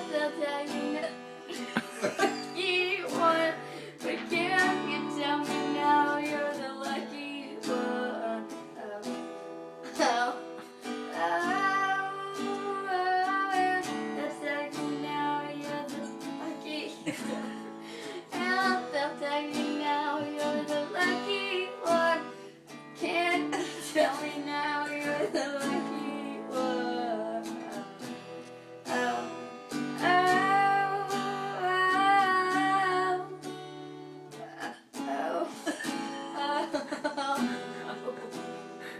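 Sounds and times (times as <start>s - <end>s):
person singing: 0.0s - 33.6s, 34.3s - 38.9s
strummed acoustic guitar: 0.0s - 38.9s
person hiccuping: 1.6s - 2.6s.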